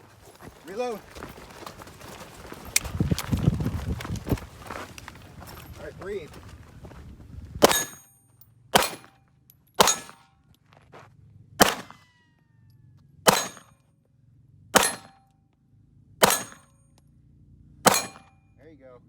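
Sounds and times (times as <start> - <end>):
gunshots: 7.6 - 8.0, 8.8 - 9.2, 9.8 - 10.3, 11.6 - 12.0, 13.3 - 13.7, 14.8 - 15.2, 16.2 - 16.7, 17.8 - 18.3
steel targets clanging: 7.6 - 8.1, 8.8 - 9.2, 9.8 - 10.3, 13.3 - 13.7, 14.8 - 15.2, 16.2 - 16.7, 17.9 - 18.4.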